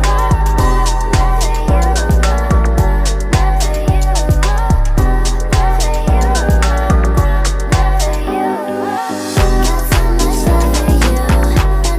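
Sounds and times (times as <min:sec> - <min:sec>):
pop funk music with steady beat: 0:00.0 - 0:11.9.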